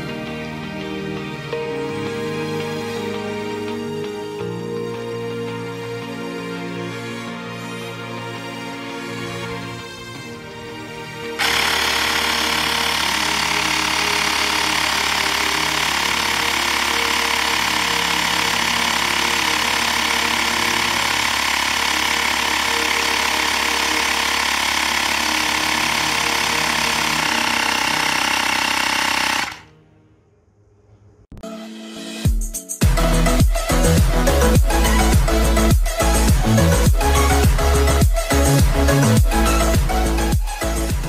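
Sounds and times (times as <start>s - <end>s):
electric air pump buzzing: 11.4s - 29.7s.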